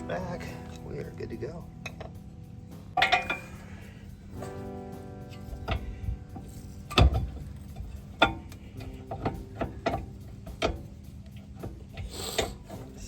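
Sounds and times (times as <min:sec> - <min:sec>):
struck metal ringing: 0:00.0 - 0:13.0
metallic clicks and knocks: 0:01.8 - 0:02.3, 0:02.9 - 0:04.6, 0:05.2 - 0:13.0.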